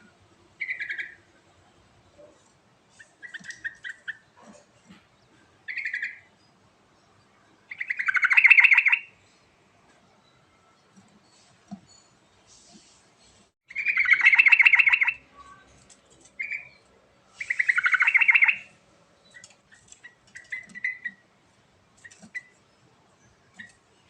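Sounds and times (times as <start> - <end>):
soft bird chirps: 0.0 - 24.0
bird chattering: 0.6 - 1.3, 5.7 - 6.3, 7.7 - 9.1, 13.7 - 15.2, 17.4 - 21.2.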